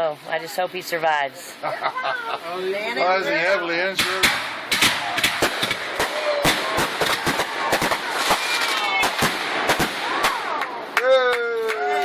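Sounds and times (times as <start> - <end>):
fireworks bangs and crackles: 3.9 - 11.0.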